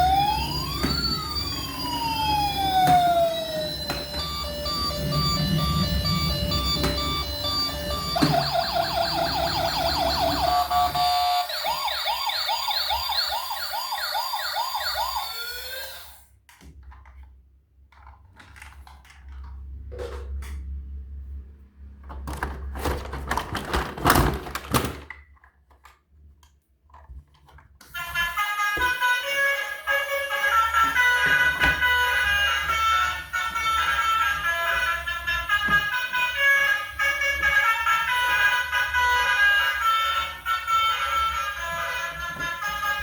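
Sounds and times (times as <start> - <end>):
electronic toy siren: 0.0 - 16.3, 27.9 - 43.0
knocks and clicks: 0.2 - 11.1.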